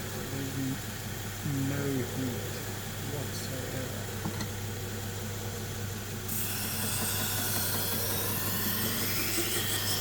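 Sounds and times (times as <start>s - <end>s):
belt grinder motor humming: 6.3s - 10.0s.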